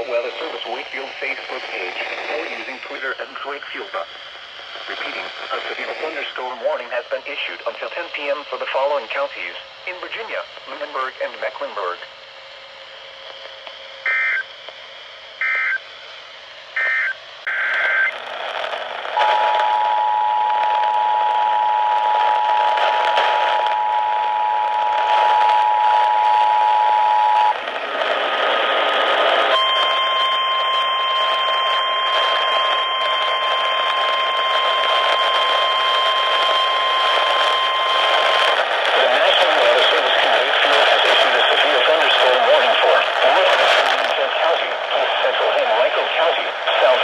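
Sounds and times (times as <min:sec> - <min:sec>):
radio hiss: 0:00.0 - 0:47.0
steady alarm tone: 0:14.0 - 0:14.5, 0:15.4 - 0:15.9, 0:16.7 - 0:27.6, 0:29.5 - 0:39.8
short data bursts: 0:16.7 - 0:27.6
two-tone attention signal: 0:29.5 - 0:38.5.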